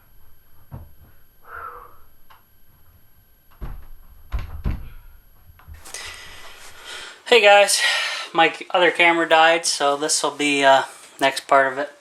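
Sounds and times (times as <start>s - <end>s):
dull knocks and thumps: 0.2s - 1.2s, 2.3s - 5.8s.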